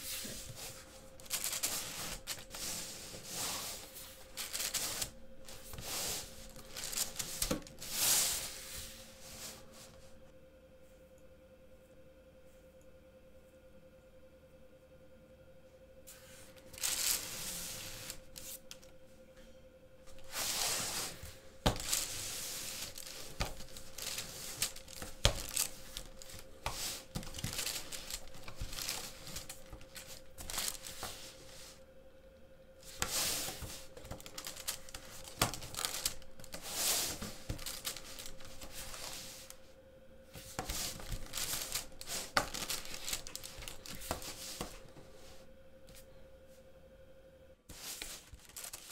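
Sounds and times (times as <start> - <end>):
plastic pieces scraping: 0.2 - 8.5, 16.6 - 18.9, 20.1 - 31.6, 32.9 - 39.6, 40.4 - 44.9, 47.8 - 48.9.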